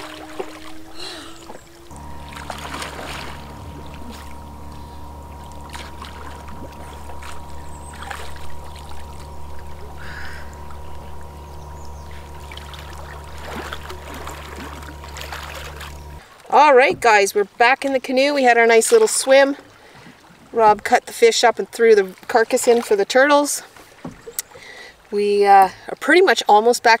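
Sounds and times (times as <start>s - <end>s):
steady low hum: 0.0s - 16.2s
water splashing from swimming: 0.0s - 17.9s.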